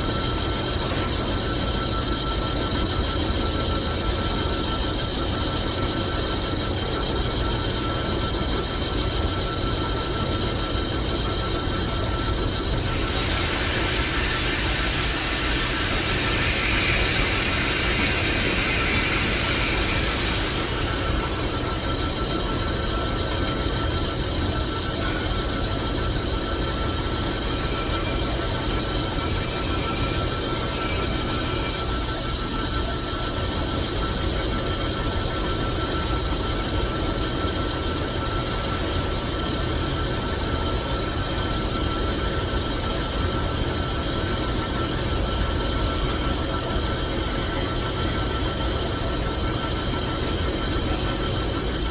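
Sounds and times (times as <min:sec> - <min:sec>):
metal lathe running with whine: 0:00.0 - 0:51.9
lathe running: 0:10.3 - 0:33.4
hiss: 0:12.8 - 0:22.0.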